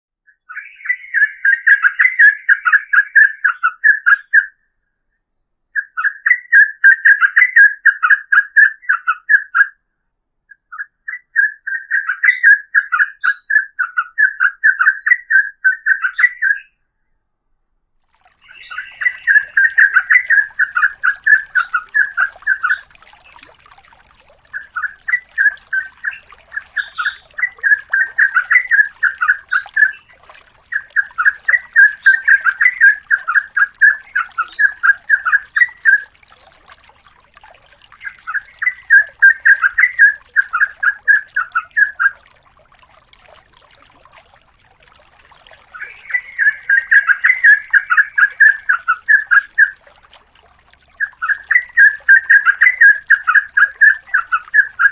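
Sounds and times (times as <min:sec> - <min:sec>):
bird singing chattering notes: 0:18.4 - 0:23.5, 0:24.2 - 0:36.5.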